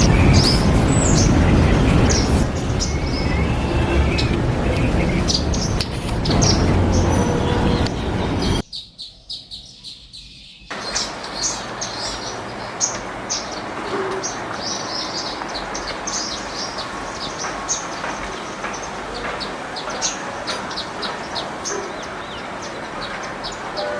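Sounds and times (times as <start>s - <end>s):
loud low rumble: 0.0s - 8.6s
birds chirping: 0.0s - 23.9s.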